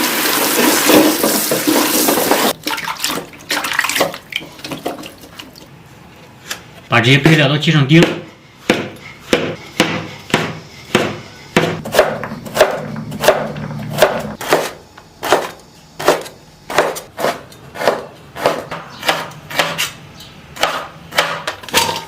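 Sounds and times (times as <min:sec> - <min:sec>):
knife chopping on cutting board: 0:08.0 - 0:20.0, 0:20.6 - 0:21.5.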